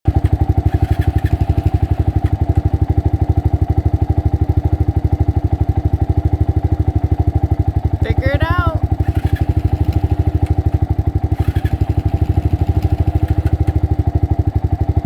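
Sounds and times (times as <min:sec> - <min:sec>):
single-cylinder engine running: 0:00.1 - 0:15.0.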